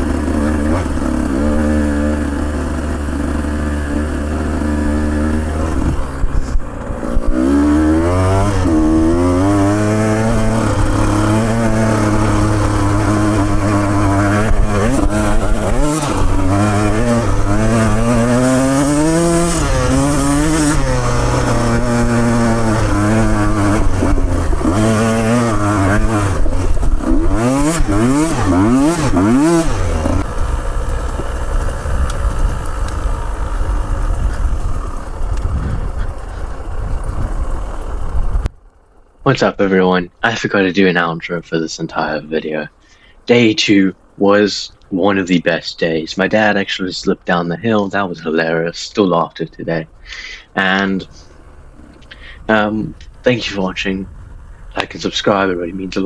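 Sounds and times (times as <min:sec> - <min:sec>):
vehicle engine revving: 0:00.0 - 0:38.6, 0:50.0 - 0:56.0.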